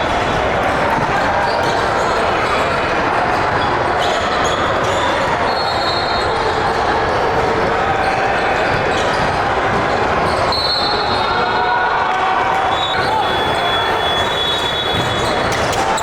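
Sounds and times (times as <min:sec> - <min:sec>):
crowd din: 0:00.0 - 0:16.0
sneaker squeaks: 0:04.0 - 0:06.5, 0:12.5 - 0:16.0.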